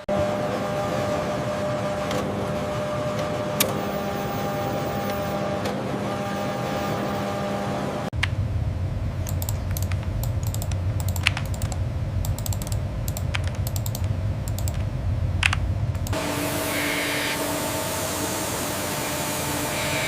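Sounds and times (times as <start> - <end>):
steady machine hum: 0.0 - 20.0
typing on a computer keyboard: 9.3 - 14.8.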